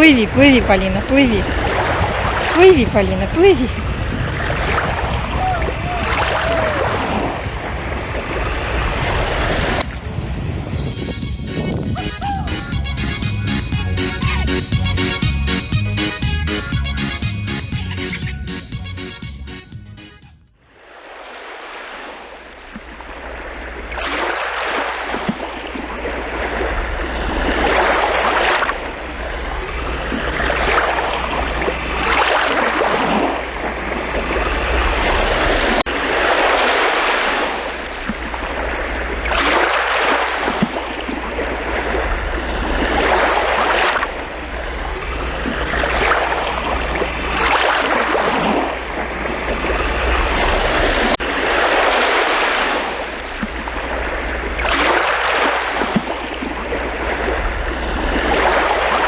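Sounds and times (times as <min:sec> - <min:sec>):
small waves breaking on beach: 0:00.0 - 0:11.0, 0:20.8 - 0:59.0
steady low rumble: 0:52.6 - 0:59.0.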